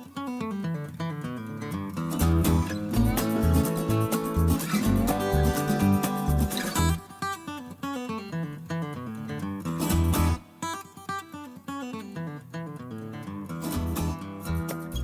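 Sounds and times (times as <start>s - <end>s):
acoustic guitar picking: 0.0s - 15.0s
bass line: 2.2s - 7.0s.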